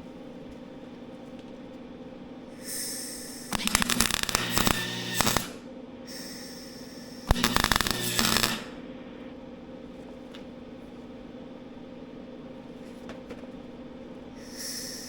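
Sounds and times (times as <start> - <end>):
steady low hum: 0.0 - 15.0
sharp click: 3.5 - 5.6, 7.3 - 8.8.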